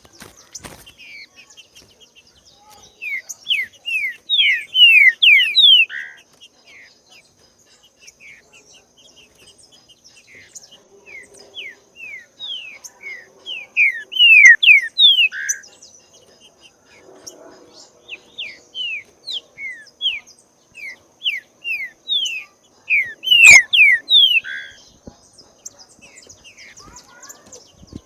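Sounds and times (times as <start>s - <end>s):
bird singing whistled notes: 1.0s - 6.9s, 10.0s - 16.0s, 17.8s - 28.0s.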